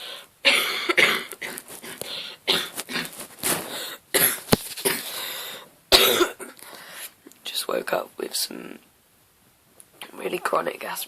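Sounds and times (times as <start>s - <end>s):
person coughing and breathing hard: 0.4s - 3.2s, 3.8s - 6.6s.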